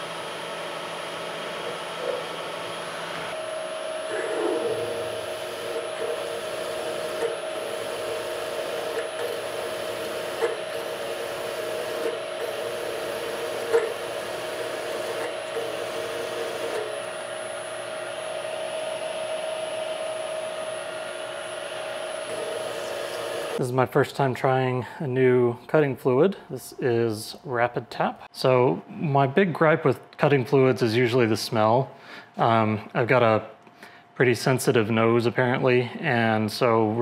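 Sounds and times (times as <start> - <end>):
machine tool humming with high whine: 0.0 - 23.6.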